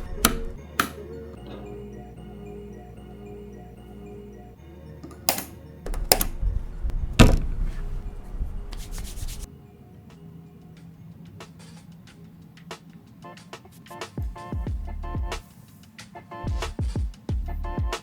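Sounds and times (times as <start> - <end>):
soft background music: 0.0 - 18.0
hands rubbing and scraping: 8.7 - 9.5.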